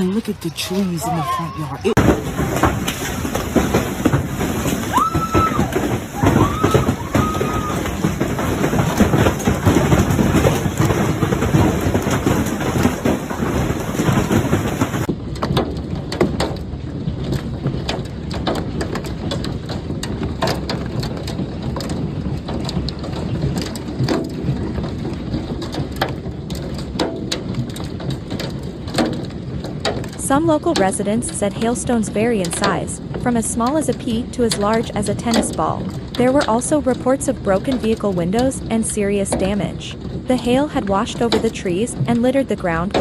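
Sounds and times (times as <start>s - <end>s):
hail and heavy rain: 1.0s - 43.0s
hailstones striking hard surfaces: 1.9s - 31.0s.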